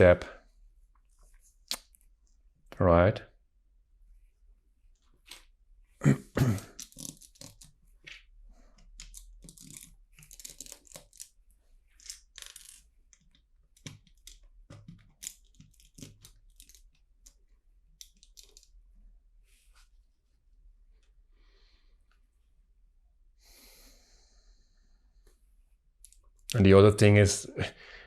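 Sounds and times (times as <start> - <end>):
plastic bricks clicking and rustling: 6.7 - 7.8, 8.8 - 11.3, 12.0 - 17.4.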